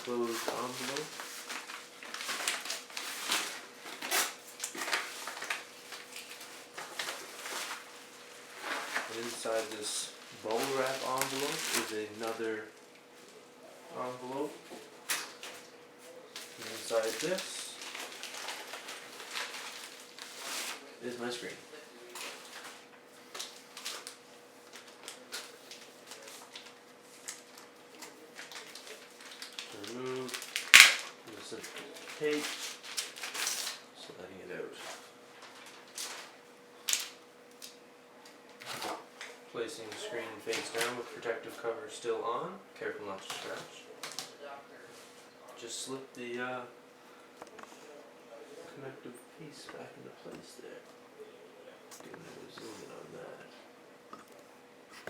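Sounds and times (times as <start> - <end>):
padded envelope rustling and crinkling: 0.0 - 12.4, 16.3 - 20.8, 21.4 - 33.8, 34.8 - 37.8.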